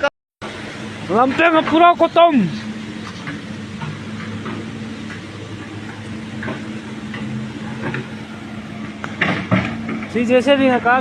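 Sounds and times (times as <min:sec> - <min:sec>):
low motor hum: 0:00.0 - 0:11.0
rushing floodwater: 0:00.0 - 0:11.0.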